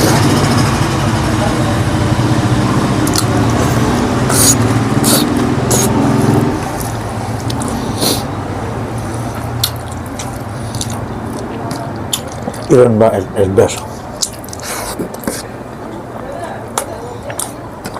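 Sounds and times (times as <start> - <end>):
wet chewing and biting: 3.0 - 8.3, 9.3 - 12.8, 13.7 - 15.5, 16.8 - 17.9.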